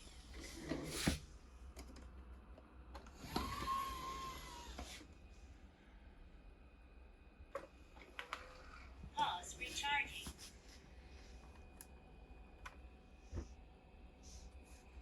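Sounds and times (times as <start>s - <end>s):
robot vacuum dock whirring: 3.1s - 5.1s.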